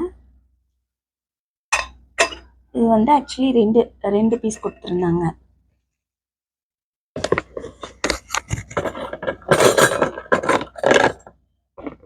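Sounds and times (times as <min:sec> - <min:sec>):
small metal utensils clinking: 0:08.7 - 0:11.3.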